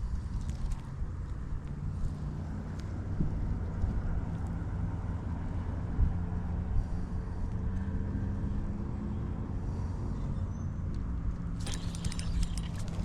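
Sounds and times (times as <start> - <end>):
sharp clicks: 11.6 - 13.0
small boat motor humming: 11.6 - 13.0.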